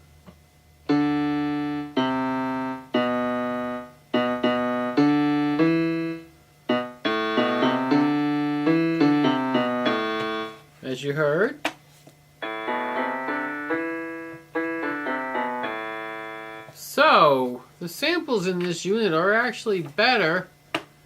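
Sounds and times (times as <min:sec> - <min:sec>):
electronic keyboard piano chords: 0:00.8 - 0:10.7, 0:12.4 - 0:16.9.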